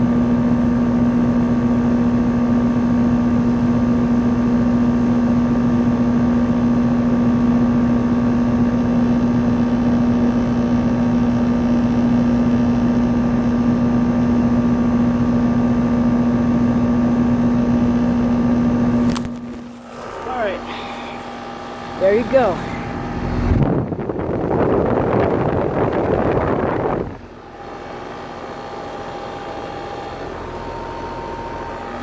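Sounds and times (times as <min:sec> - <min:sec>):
compressor humming: 0:00.0 - 0:32.0
fan air rushing: 0:18.0 - 0:32.0.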